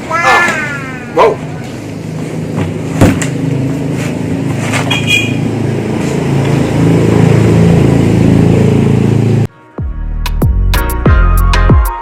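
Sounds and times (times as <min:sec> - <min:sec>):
vehicle engine running: 0:00.8 - 0:09.5.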